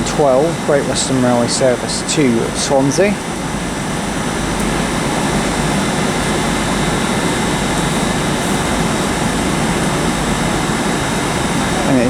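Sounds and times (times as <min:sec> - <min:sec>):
train humming and hissing: 0:00.0 - 0:12.0.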